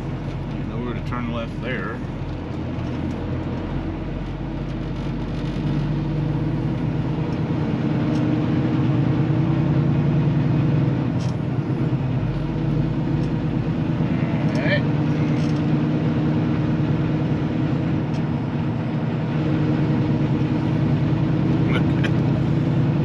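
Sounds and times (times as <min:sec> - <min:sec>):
diesel truck engine running: 0:00.0 - 0:23.0.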